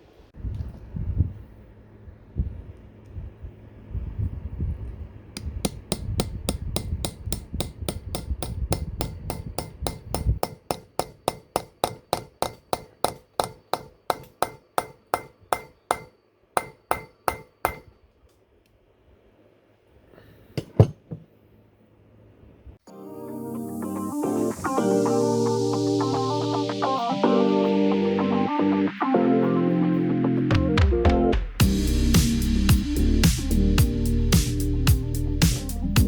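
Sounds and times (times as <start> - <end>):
hammer blows on metal: 5.4 - 18.0
low rumble: 31.6 - 36.0.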